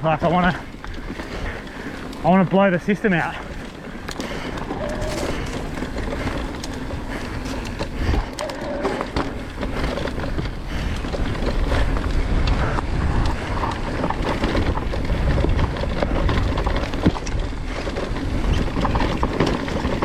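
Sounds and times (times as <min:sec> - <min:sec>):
bike tyres rattling over roots: 0:00.0 - 0:20.0
wind buffeting microphone: 0:00.0 - 0:20.0.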